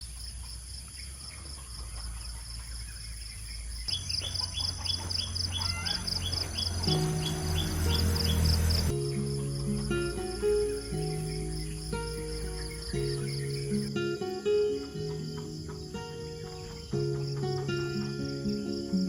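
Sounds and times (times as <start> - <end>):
crickets chirping: 0.0 - 19.0
falling bird-like chirps: 0.9 - 19.0
high insect whine: 2.8 - 19.0
instrumental music: 6.4 - 19.0.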